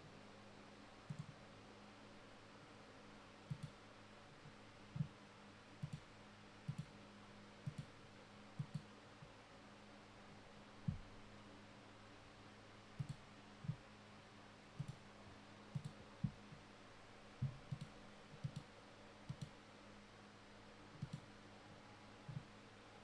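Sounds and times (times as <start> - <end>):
steady low hum: 0.0 - 23.0
faint clicks: 3.5 - 3.8, 14.8 - 15.0, 17.4 - 18.7, 19.3 - 19.6, 21.0 - 21.3.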